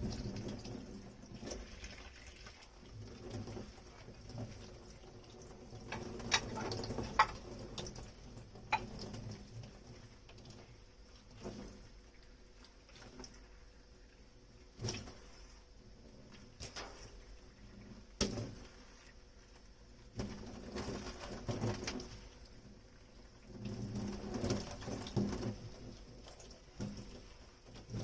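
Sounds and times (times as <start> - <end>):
water splashing in sink: 0.0 - 13.6, 14.6 - 28.0
crockery clinking and knocking: 6.3 - 7.4.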